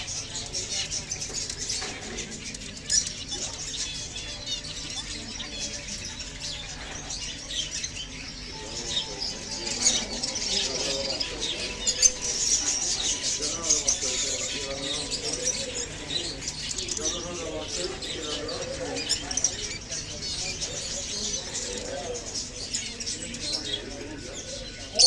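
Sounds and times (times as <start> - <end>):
parrots chirping and chattering: 0.0 - 25.0.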